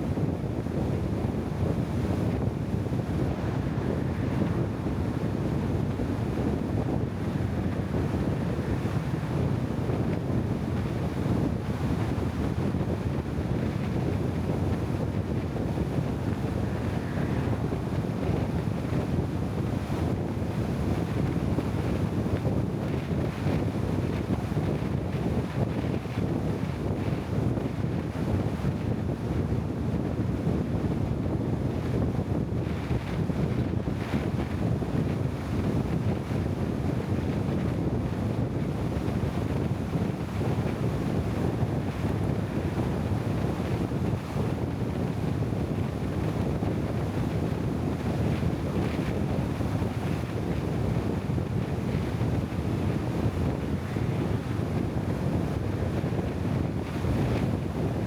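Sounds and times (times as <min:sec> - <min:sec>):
wind noise on microphone: 0:00.0 - 0:58.0.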